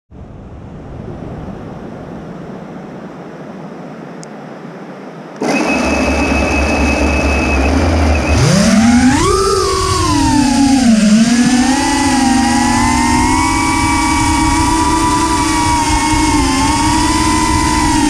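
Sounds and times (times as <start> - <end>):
quadcopter motors whining: 5.4 - 18.0.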